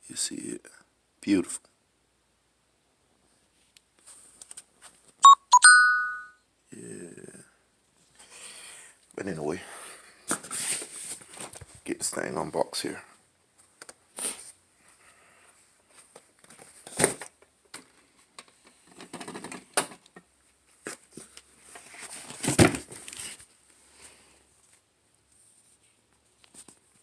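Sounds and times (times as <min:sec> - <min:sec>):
cardboard scraping and rustling: 0:21.7 - 0:23.4.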